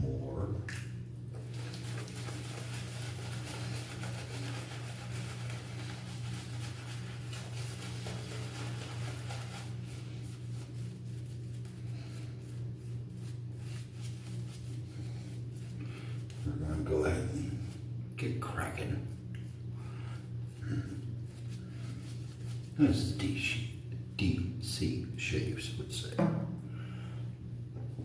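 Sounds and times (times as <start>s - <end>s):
steady low hum: 0.0s - 28.0s
shaving brush swishing lather: 1.4s - 17.9s, 20.9s - 23.2s.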